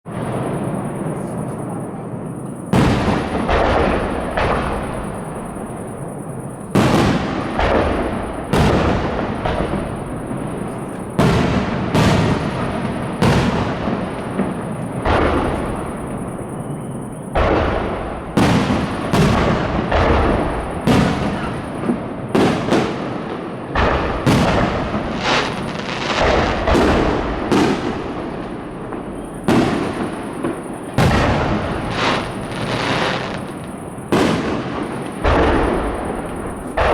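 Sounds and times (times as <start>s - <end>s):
fireworks shells bursting: 12.0s - 36.9s
rumbling echo: 17.4s - 30.2s.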